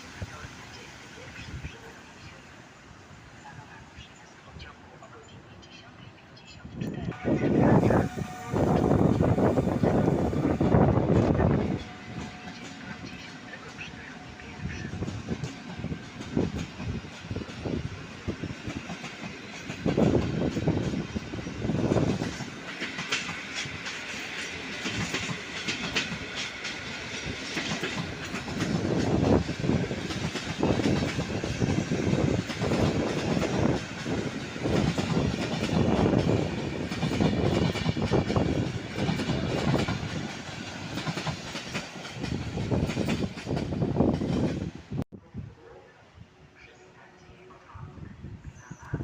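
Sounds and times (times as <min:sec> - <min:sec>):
train rolling rumble: 0:00.0 - 0:45.6
train wheels clacking on rails: 0:14.8 - 0:44.6.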